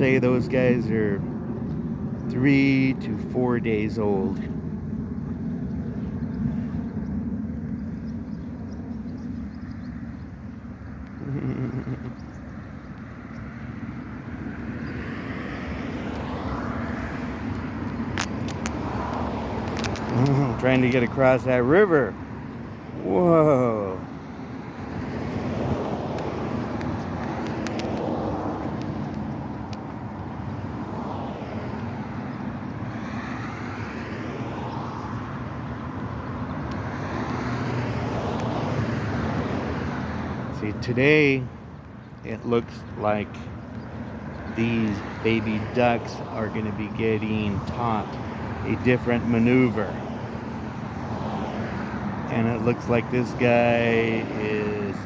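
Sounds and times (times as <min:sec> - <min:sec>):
passing vehicle engine rumble: 0:00.0 - 0:55.0
sharp clicks: 0:17.5 - 0:21.1.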